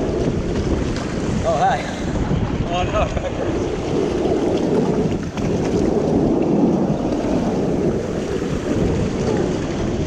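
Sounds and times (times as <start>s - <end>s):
water rushing under a raft: 0.0s - 10.0s
wind buffeting microphone: 0.0s - 10.0s.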